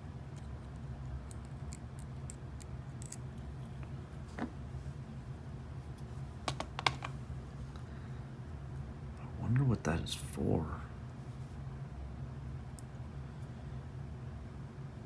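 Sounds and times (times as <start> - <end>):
steady low hum: 0.0 - 15.0
metal lock parts clicking: 1.3 - 3.2.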